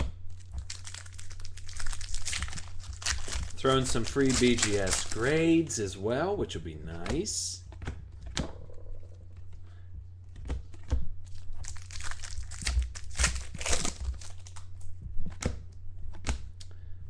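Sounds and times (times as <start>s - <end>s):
cards being handled: 0.0s - 5.4s
low electrical hum: 0.0s - 17.0s
card pack wrappers tearing and crinkling: 0.3s - 5.9s, 11.2s - 14.9s.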